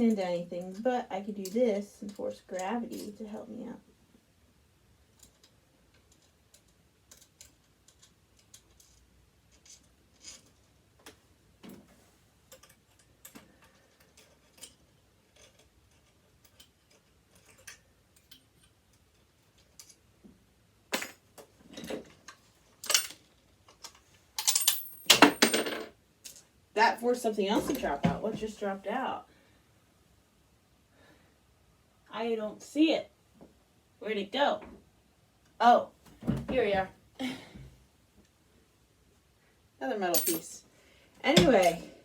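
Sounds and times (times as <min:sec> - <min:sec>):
metal parts clicking and tapping: 0:05.1 - 0:11.2, 0:12.5 - 0:20.1, 0:20.9 - 0:26.4, 0:40.2 - 0:40.5, 0:41.3 - 0:41.8
small metal piece dropping: 0:20.9 - 0:21.2, 0:24.4 - 0:25.9, 0:40.2 - 0:40.5.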